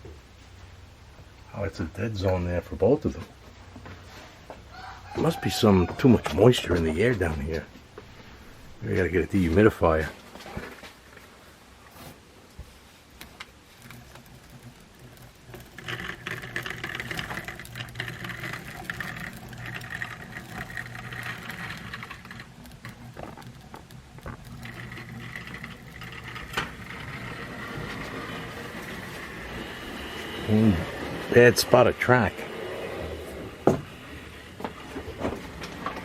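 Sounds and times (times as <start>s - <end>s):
whirring gears and wheels: 4.3s - 10.0s, 13.2s - 36.0s
model train motor hum: 13.7s - 36.0s.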